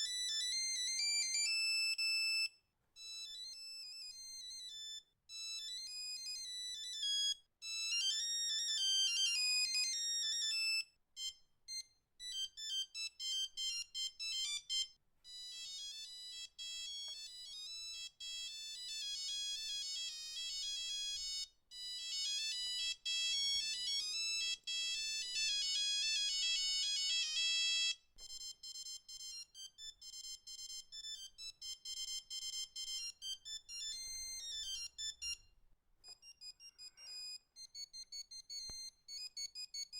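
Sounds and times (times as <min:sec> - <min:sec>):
monophonic ringtone beeping melody: 0:12.3 - 0:35.4, 0:36.1 - 0:39.9.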